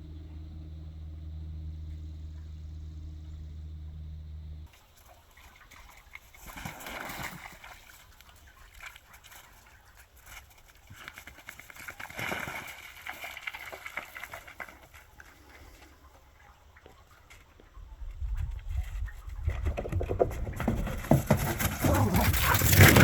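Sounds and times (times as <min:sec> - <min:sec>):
dogs moving on wet snow: 0:04.8 - 0:17.7, 0:20.6 - 0:23.0
rustling and pattering: 0:17.1 - 0:23.0.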